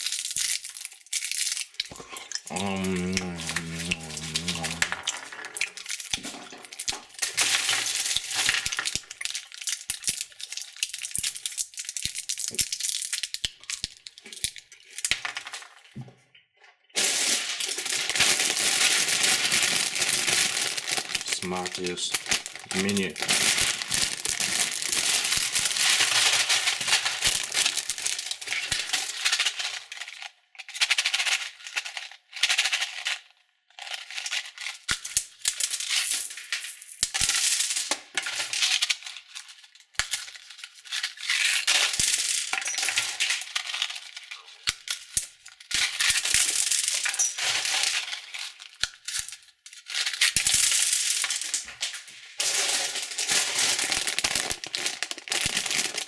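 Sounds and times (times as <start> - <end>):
small candies rattling: 0.0 - 15.8, 17.0 - 56.0
plastic wrappers crinkling: 0.0 - 15.9, 17.0 - 56.0.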